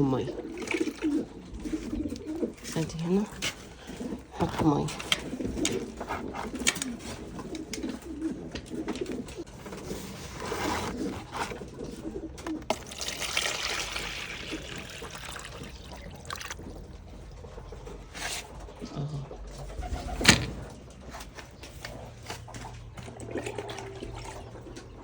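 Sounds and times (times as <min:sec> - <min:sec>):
pigeons cooing: 0:00.0 - 0:25.0
water trickling into drinker: 0:12.6 - 0:17.1, 0:23.0 - 0:25.0.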